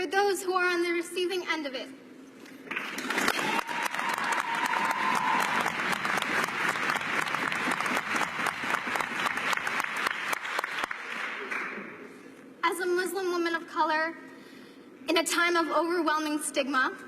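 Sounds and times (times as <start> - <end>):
audience applause: 2.7 - 11.9.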